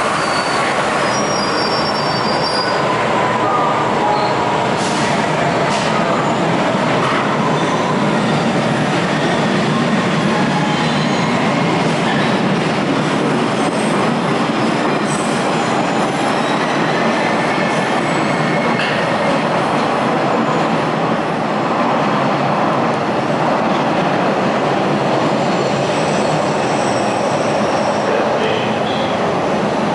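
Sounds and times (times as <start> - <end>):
high wheel squeals: 0.0 - 3.0, 25.4 - 29.2
subway train wheels rumbling: 0.0 - 29.9.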